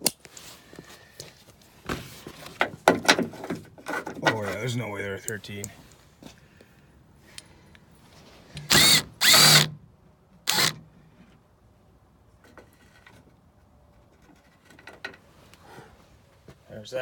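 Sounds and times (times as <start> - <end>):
power drill spinning: 8.6 - 9.7, 10.5 - 10.8.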